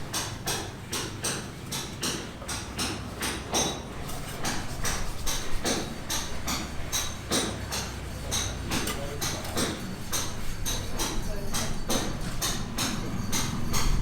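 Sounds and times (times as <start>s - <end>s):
sharp knocks with metallic ring: 4.4s - 14.0s.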